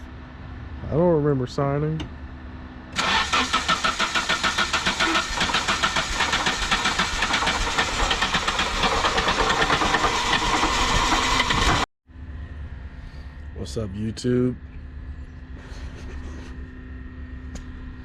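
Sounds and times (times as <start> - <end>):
car engine turning over: 3.0 - 11.9.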